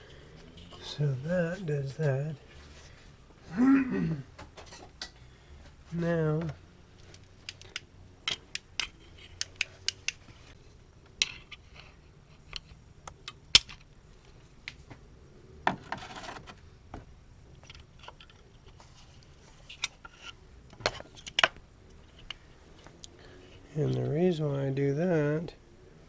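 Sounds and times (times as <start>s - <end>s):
hand tools clicking and tapping: 7.0s - 10.2s.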